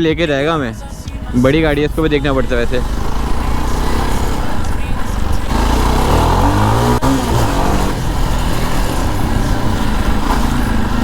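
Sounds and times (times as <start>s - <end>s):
vehicle engine accelerating: 1.2s - 11.0s
gear shift click: 2.5s - 11.0s.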